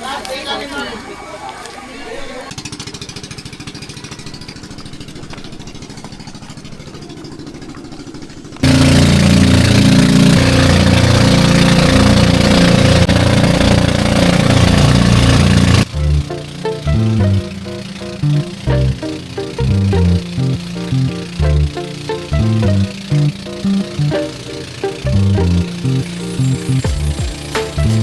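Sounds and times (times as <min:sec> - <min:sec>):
motorbike engine running: 0:02.5 - 0:28.0
loud background music: 0:15.9 - 0:28.0.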